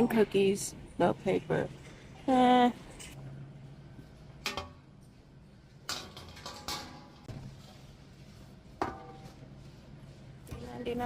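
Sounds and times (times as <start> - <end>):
low steady hum: 0.0 - 11.0
kitchenware knocks and clinks: 5.9 - 7.3.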